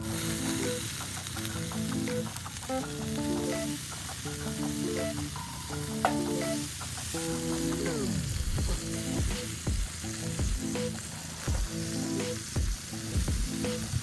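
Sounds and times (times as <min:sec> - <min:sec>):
background music with low beat: 0:00.0 - 0:14.0
chicken sizzling on a grill: 0:00.0 - 0:14.0.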